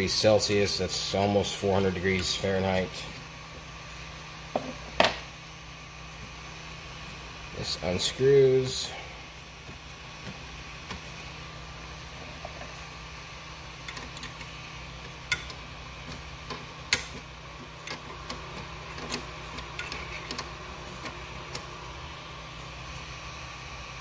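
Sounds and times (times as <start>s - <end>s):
fans humming: 0.0s - 24.0s.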